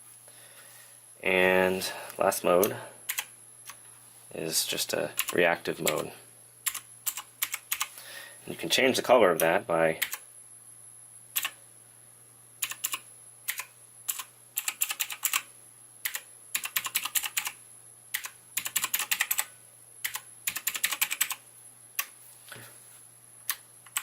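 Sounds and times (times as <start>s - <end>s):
mechanical keyboard typing: 6.7s - 7.9s, 12.6s - 17.6s, 18.2s - 21.4s, 23.5s - 24.0s.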